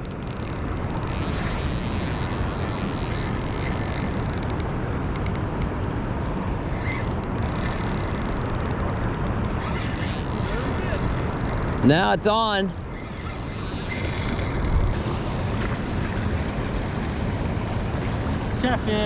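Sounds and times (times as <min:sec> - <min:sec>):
thin high whine: 0:00.0 - 0:04.9, 0:06.6 - 0:15.1.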